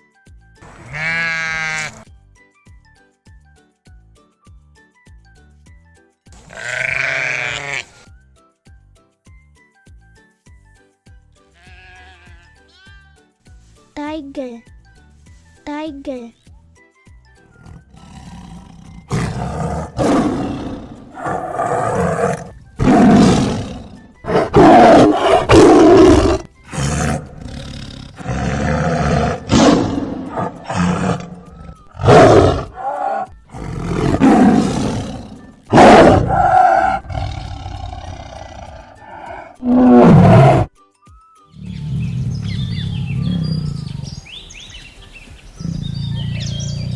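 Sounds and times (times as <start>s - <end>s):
soft children's music: 0.0s - 46.9s
tiger roaring: 17.6s - 40.7s, 41.6s - 44.2s.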